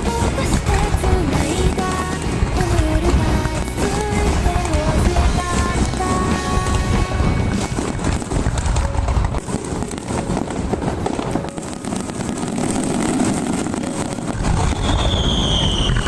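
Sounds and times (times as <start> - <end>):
fireworks bursting: 0.0 - 16.0
fireworks crackling: 0.0 - 16.0
high falling whistle: 14.0 - 16.0.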